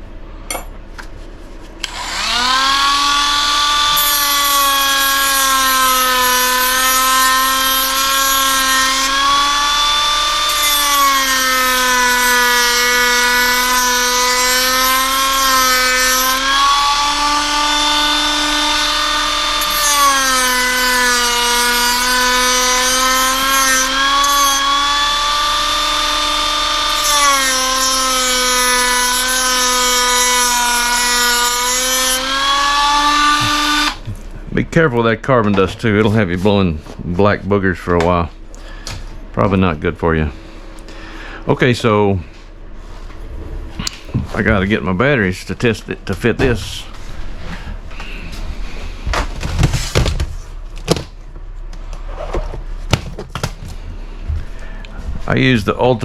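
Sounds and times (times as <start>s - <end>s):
rotary tool whining: 1.8s - 34.1s.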